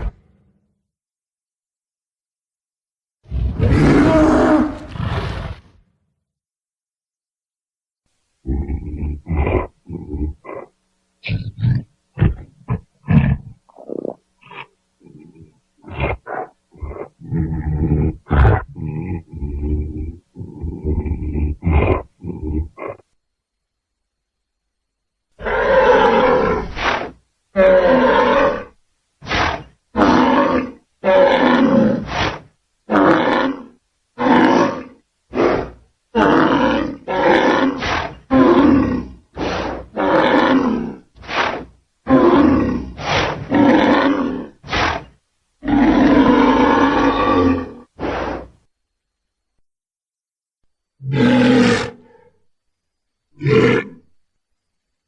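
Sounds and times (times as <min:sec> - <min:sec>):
dinosaur roars and grunts: 0:03.2 - 0:05.7, 0:08.4 - 0:23.1, 0:25.4 - 0:48.6, 0:51.0 - 0:52.4.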